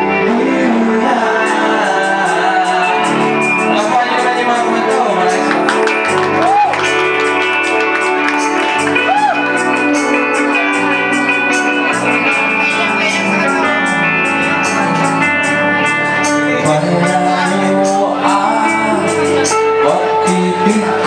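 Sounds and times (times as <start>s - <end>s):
person singing: 0.0s - 21.0s
strummed acoustic guitars: 0.0s - 21.0s
steady percussion beat: 3.0s - 21.0s.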